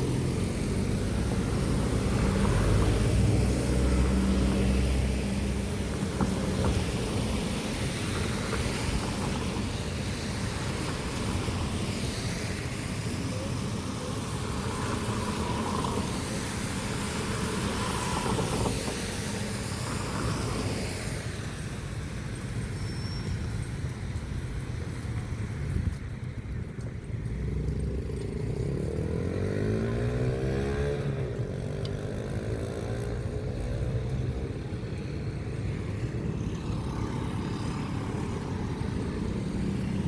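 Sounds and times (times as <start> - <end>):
vehicle engines passing: 0.0 - 40.0.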